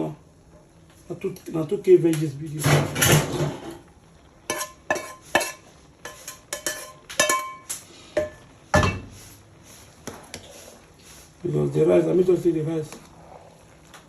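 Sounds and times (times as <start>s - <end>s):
metal spoon clinking on pot: 4.5s - 8.3s.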